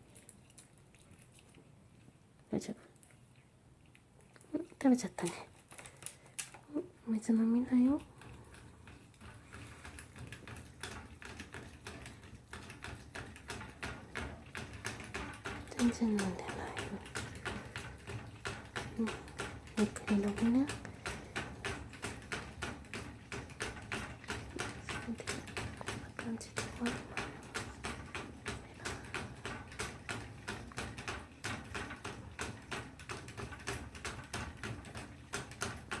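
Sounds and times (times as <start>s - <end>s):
dog claws clicking on bowl: 7.4s - 36.0s.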